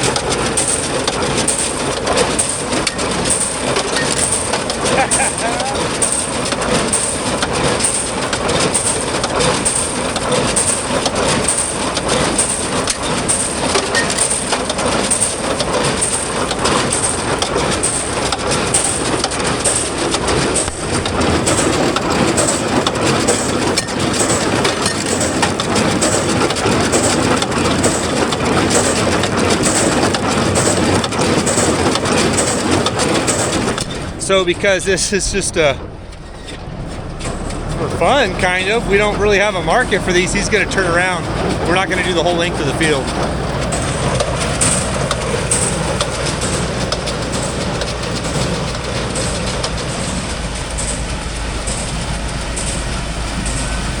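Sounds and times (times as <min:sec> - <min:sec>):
hay baler running: 0:00.0 - 0:54.0.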